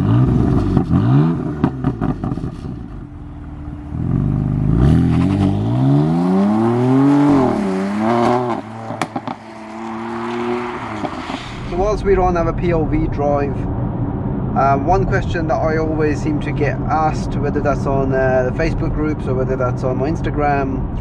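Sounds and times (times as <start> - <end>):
car engine accelerating: 0.0 - 12.2
exhaust cracks: 3.9 - 19.0.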